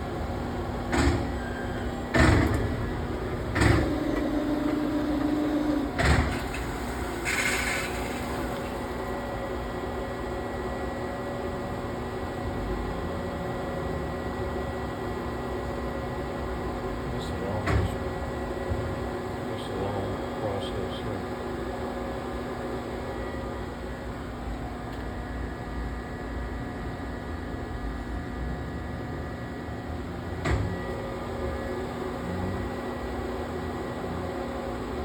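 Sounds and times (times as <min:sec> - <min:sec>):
steady machine whine: 0:00.0 - 0:35.0
machine clunks: 0:00.8 - 0:01.4, 0:02.1 - 0:07.6.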